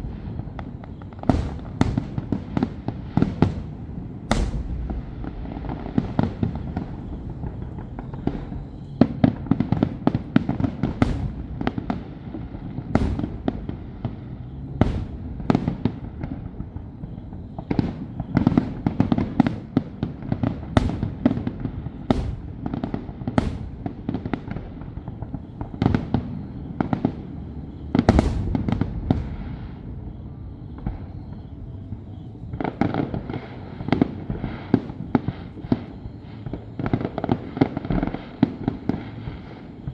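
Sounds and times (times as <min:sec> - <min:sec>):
fireworks bursting: 0:00.0 - 0:39.9
low rumble: 0:03.6 - 0:09.0.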